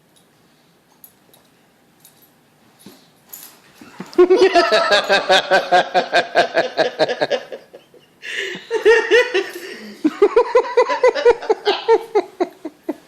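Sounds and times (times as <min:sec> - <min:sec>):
people laughing hard: 0:03.9 - 0:13.0.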